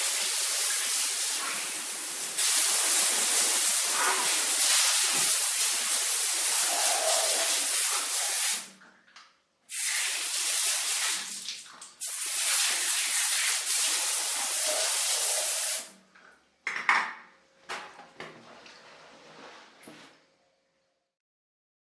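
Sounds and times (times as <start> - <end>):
water spraying: 0.0 - 8.7, 9.7 - 15.9.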